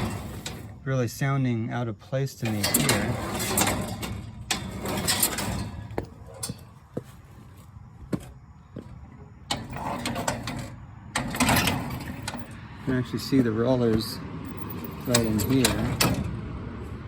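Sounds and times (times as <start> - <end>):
metal parts clicking: 14.5 - 16.2.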